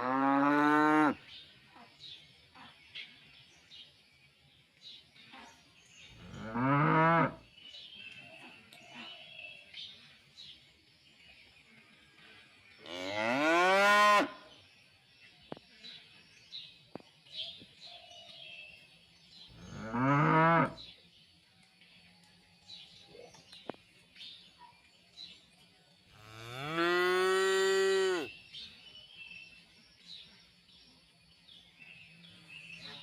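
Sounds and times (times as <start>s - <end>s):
cows mooing: 19.6s - 20.8s.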